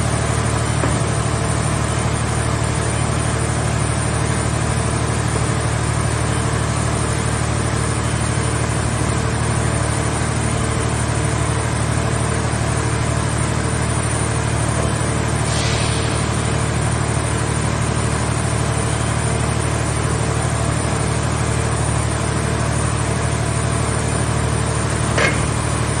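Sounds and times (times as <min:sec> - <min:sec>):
baler engine running steadily: 0:00.0 - 0:26.0
brief hiss: 0:15.4 - 0:16.7.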